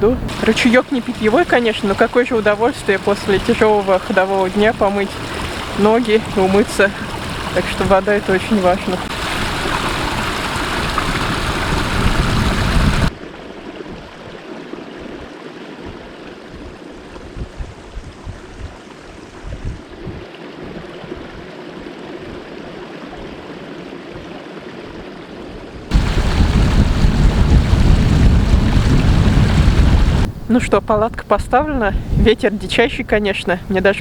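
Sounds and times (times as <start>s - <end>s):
wind buffeting microphone: 0.0s - 13.1s, 15.1s - 21.4s, 25.9s - 34.0s
brook gurgling: 0.3s - 17.1s, 25.9s - 30.3s.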